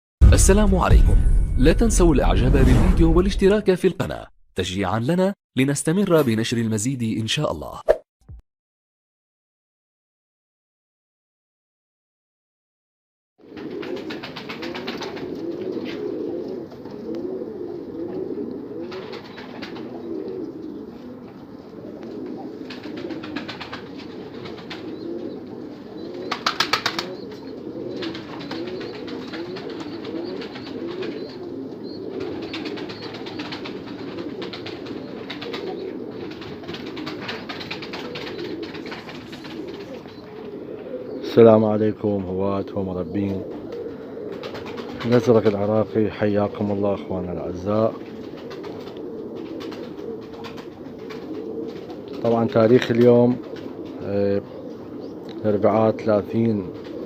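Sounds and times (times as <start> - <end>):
pigeons cooing: 13.4 - 57.0.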